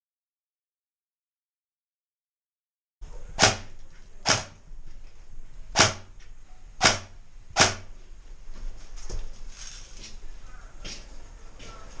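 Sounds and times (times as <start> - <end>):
airsoft gun shots: 3.3 - 4.6, 5.7 - 6.1, 6.8 - 7.9.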